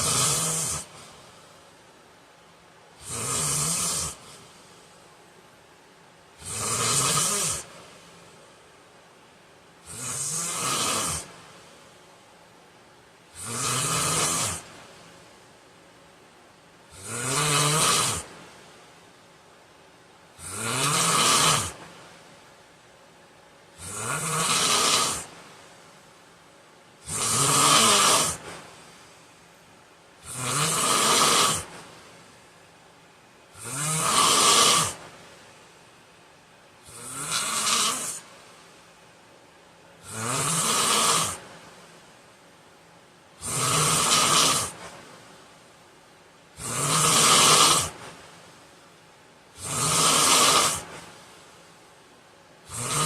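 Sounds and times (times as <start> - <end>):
man snoring loudly: 0.0 - 0.9, 3.0 - 4.3, 6.4 - 7.7, 9.8 - 11.3, 13.3 - 14.7, 16.9 - 18.3, 20.4 - 21.8, 23.8 - 25.3, 27.0 - 28.4, 30.2 - 31.7, 33.6 - 35.0, 36.9 - 38.2, 40.0 - 41.4, 43.4 - 44.8, 46.6 - 48.0, 49.6 - 50.9, 52.7 - 53.0
quiet breathing: 4.0 - 5.6, 27.9 - 29.9.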